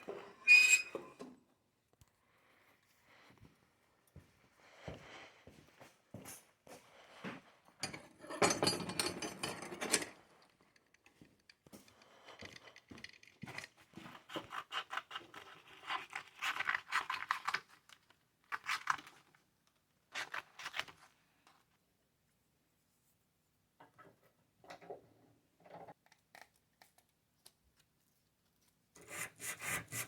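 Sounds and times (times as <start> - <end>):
sandpaper scratching on steel blade: 29.0 - 30.0.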